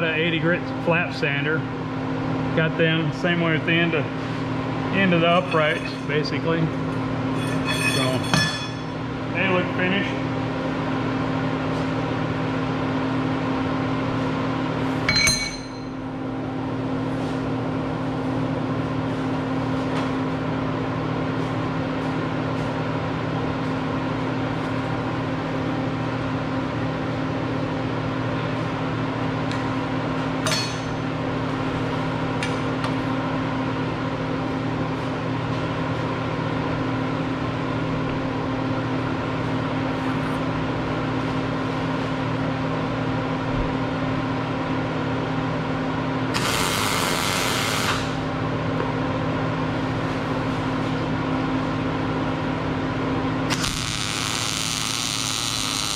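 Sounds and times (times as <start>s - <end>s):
electric machine hum: 0.0s - 55.9s
sharp metallic clink: 7.4s - 8.9s, 15.1s - 15.9s.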